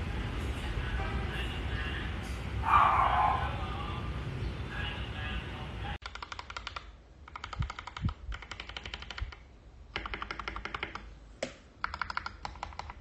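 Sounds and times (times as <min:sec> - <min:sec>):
mechanical keyboard typing: 0:06.0 - 0:11.1, 0:11.8 - 0:13.0.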